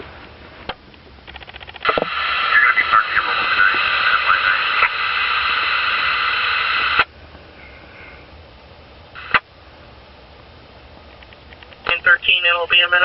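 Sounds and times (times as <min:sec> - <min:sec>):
steady whining tones: 0:00.0 - 0:13.0
radio speaker hissing: 0:01.6 - 0:08.4, 0:09.1 - 0:09.5.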